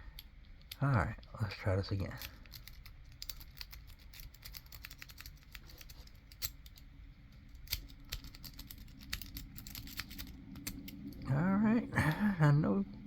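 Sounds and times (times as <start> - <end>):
lock pick clicking on pins: 2.1 - 11.3.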